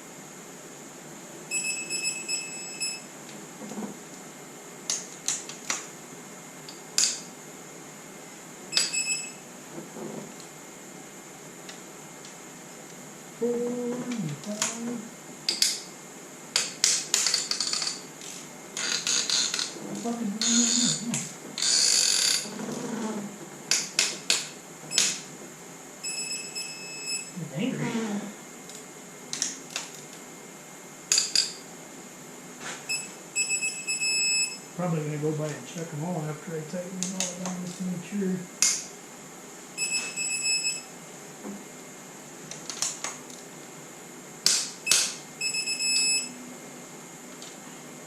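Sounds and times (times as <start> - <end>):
torque wrench beeping: 44.9 - 46.3.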